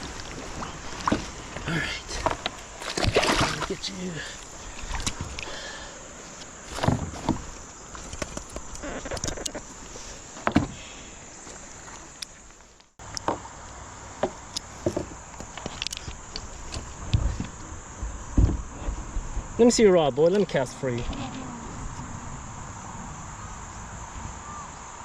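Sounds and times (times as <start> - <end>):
river water rushing: 0.0 - 7.8
knocks against a kayak: 10.4 - 10.8, 14.2 - 15.2, 17.1 - 18.7.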